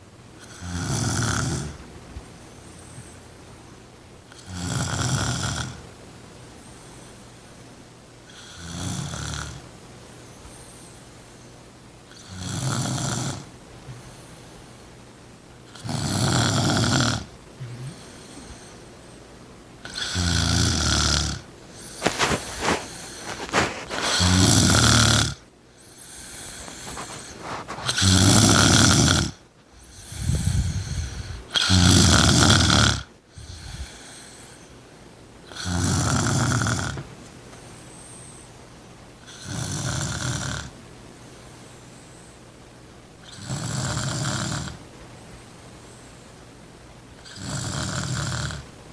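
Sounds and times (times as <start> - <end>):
woman snoring loudly: 0.4 - 1.8, 4.4 - 5.8, 8.3 - 9.6, 12.2 - 13.5, 15.7 - 18.2, 19.9 - 25.4, 26.2 - 34.2, 35.5 - 37.0, 39.3 - 40.7, 43.3 - 44.8, 47.3 - 48.6.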